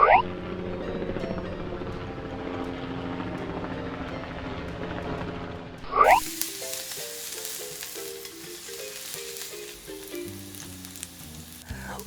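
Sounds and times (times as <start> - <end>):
light background melody: 0.0 - 12.0
steak sizzling in a frying pan: 6.0 - 12.0.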